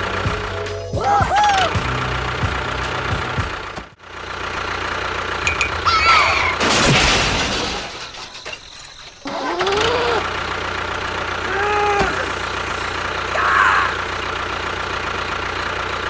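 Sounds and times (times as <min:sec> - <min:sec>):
miniature tractor engine running: 0:00.0 - 0:06.7, 0:09.3 - 0:16.0.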